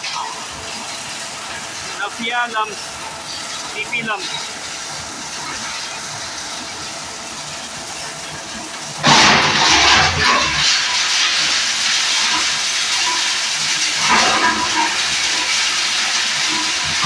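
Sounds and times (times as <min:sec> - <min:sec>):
plastic grinder crushing: 0:08.9 - 0:17.0.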